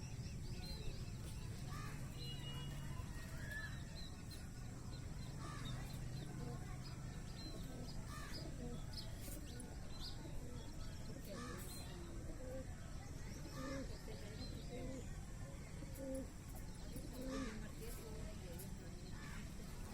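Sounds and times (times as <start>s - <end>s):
steady background noise: 0.0s - 19.9s.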